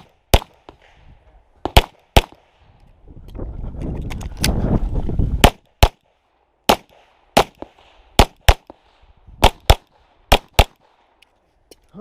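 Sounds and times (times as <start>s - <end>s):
pistol shots: 0.0s - 1.0s, 1.6s - 2.6s, 5.4s - 11.2s.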